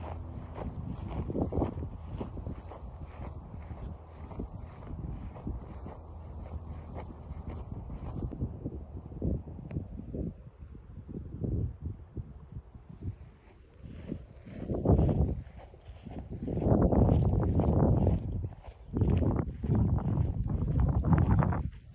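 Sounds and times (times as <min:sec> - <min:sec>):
footsteps on dirt trail: 0:00.0 - 0:08.3, 0:13.3 - 0:21.9
high-pitched insect chorus: 0:00.0 - 0:21.9.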